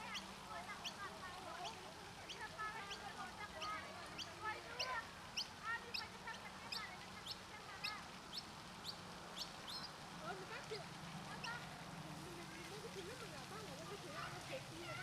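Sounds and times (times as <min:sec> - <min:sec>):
distant children's voices: 0:00.0 - 0:08.2, 0:10.2 - 0:15.0
wavering bird calls: 0:00.0 - 0:10.0, 0:11.3 - 0:11.7
fountain hiss: 0:00.0 - 0:15.0.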